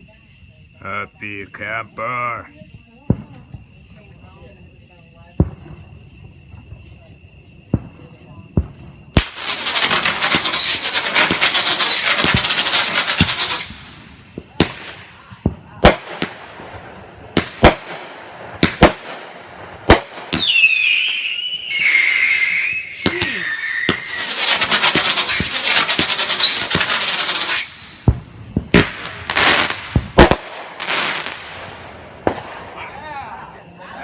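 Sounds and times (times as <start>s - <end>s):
fireworks bangs: 5.2s - 33.6s
fireworks crackling: 5.2s - 33.8s
shrill falling firework whistle: 9.2s - 14.1s, 20.3s - 28.2s.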